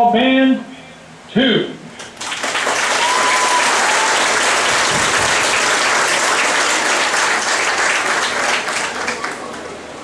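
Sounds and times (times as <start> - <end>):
crowd applauding: 2.2 - 10.0.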